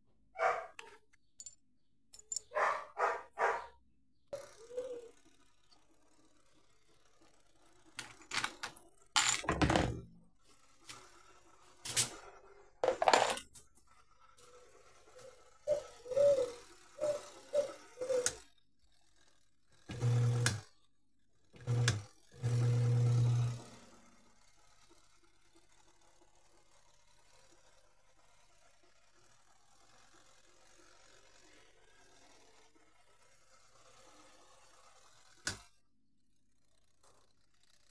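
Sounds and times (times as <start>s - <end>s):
washer motor hum: 4.4s - 18.5s, 19.8s - 20.8s, 21.5s - 25.1s
plastic and metal parts rattling: 7.9s - 10.2s, 12.8s - 13.7s.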